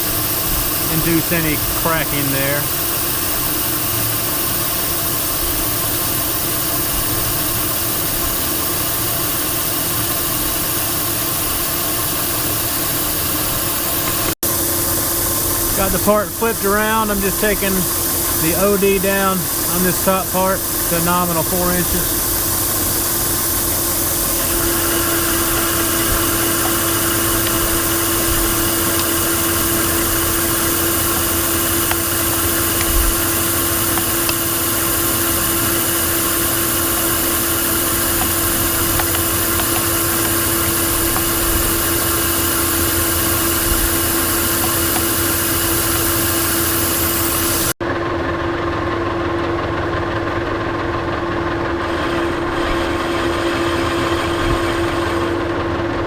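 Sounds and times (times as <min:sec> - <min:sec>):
high hiss of cutting: 0:00.0 - 0:47.8
lathe humming and whining: 0:00.0 - 0:56.0.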